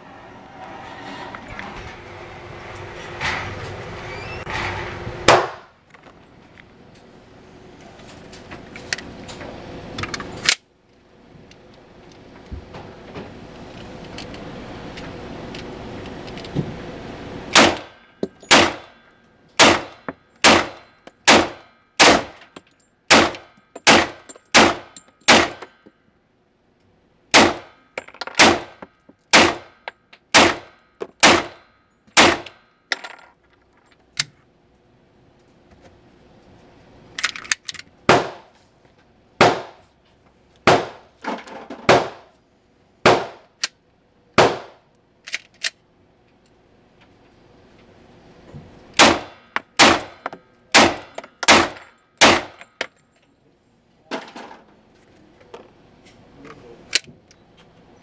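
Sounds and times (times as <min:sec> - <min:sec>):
pistol shots ringing: 0:17.6 - 0:19.0, 0:19.6 - 0:22.4.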